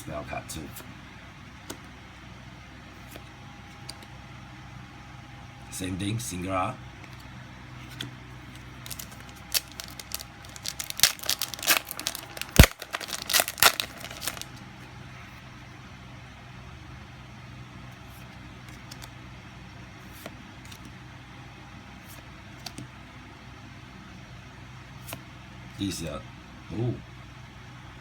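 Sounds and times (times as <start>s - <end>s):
cards being handled clicks: 7.0s - 14.5s, 18.6s - 19.2s, 22.1s - 22.9s
foil pack tearing and crinkling: 8.8s - 14.6s.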